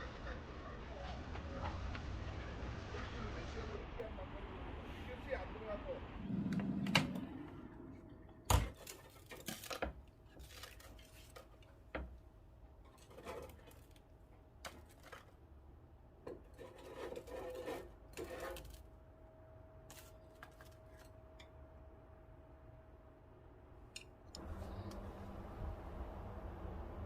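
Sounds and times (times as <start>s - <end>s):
faint steady hum: 0.0s - 27.0s
small hard objects clattering: 8.7s - 11.8s.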